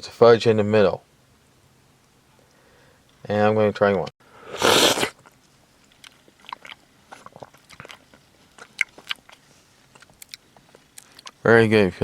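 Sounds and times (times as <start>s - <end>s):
person chewing wetly: 4.6s - 11.4s.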